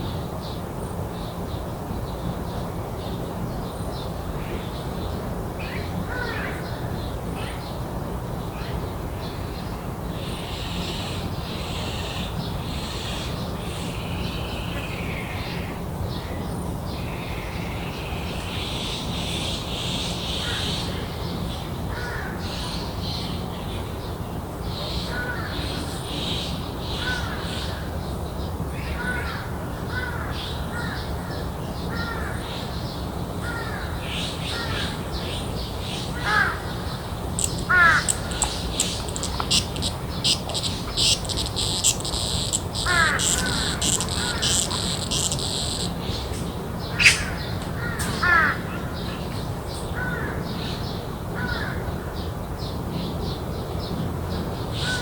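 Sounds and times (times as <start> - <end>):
crows calling: 6.1 - 6.8, 21.9 - 22.6, 26.8 - 27.8, 33.4 - 35.1, 35.9 - 46.0, 46.9 - 48.9, 50.0 - 50.4, 51.4 - 51.8, 54.8 - 55.0
garden birds chirping: 33.9 - 48.2.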